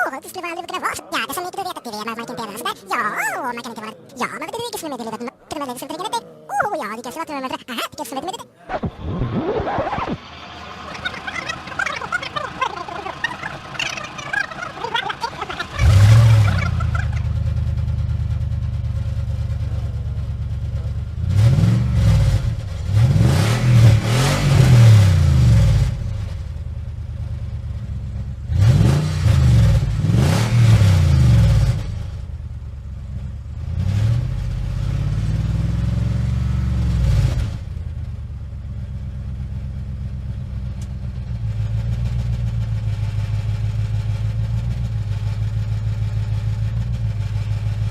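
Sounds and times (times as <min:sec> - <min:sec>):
vehicle engine idling and revving: 0:10.0 - 0:47.9.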